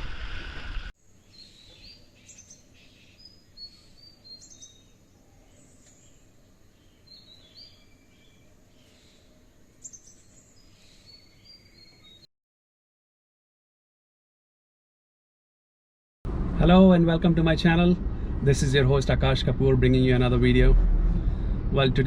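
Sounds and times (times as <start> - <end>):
birds chirping: 1.0 - 12.3
outdoor background hiss: 1.0 - 12.3.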